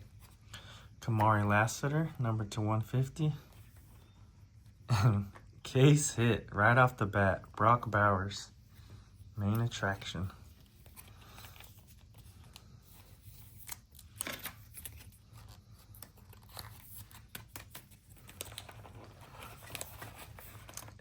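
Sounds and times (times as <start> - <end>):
trading cards rustling and clicking: 8.8 - 21.0.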